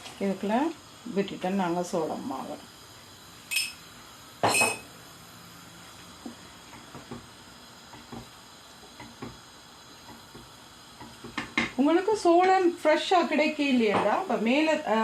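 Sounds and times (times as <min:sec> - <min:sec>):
metal utensil clinking on a pot: 0:03.5 - 0:03.8.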